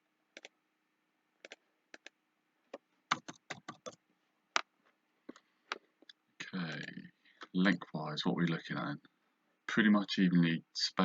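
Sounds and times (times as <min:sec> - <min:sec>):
computer mouse clicks: 0:01.4 - 0:04.0
keyboard keystrokes: 0:03.1 - 0:04.0.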